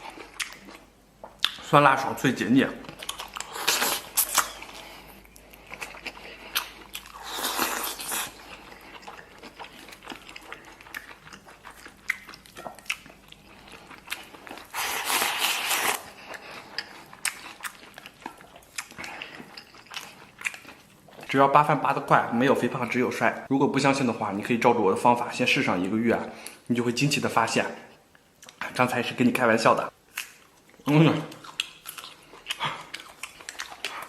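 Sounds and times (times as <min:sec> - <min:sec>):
man chewing food: 0:00.0 - 0:01.7, 0:02.7 - 0:21.3, 0:30.0 - 0:34.0.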